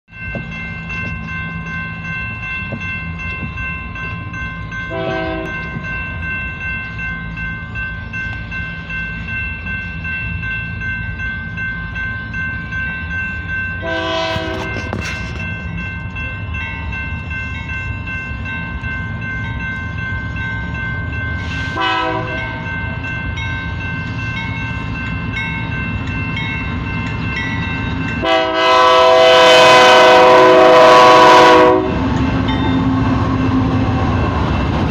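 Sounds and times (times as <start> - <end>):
freight train rumbling past: 0.1 - 34.9
locomotive air horn blasts: 4.9 - 5.6, 13.8 - 14.9, 21.5 - 22.6, 28.2 - 32.0.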